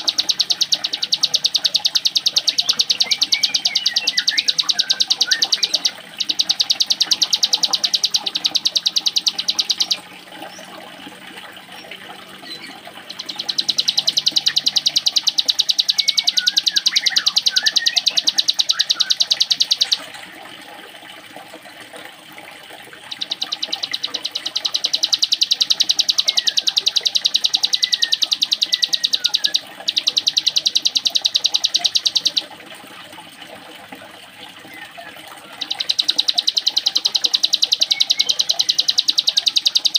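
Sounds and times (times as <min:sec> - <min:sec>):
bird buzzing trill: 0:00.0 - 0:10.0
faint soft bird chirps: 0:00.0 - 0:10.8, 0:11.6 - 0:20.1, 0:23.0 - 0:32.5, 0:34.6 - 0:39.9.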